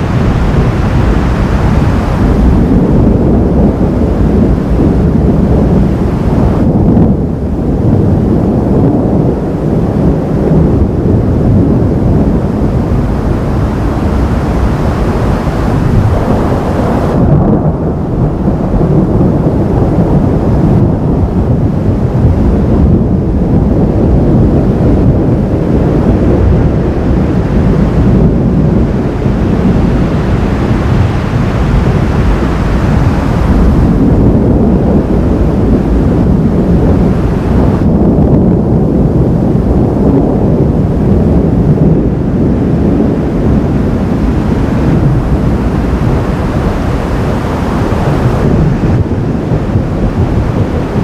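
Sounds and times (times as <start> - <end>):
thunder rumbling: 10.6 - 51.0.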